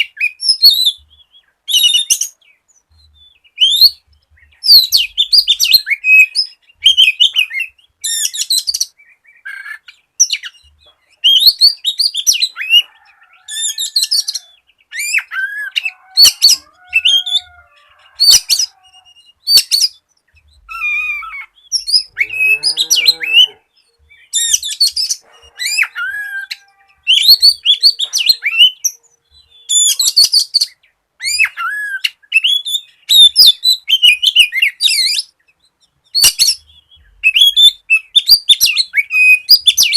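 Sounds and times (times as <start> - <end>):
bird singing whistles and trills: 0.0 - 39.9
low layered bird call: 0.0 - 39.9.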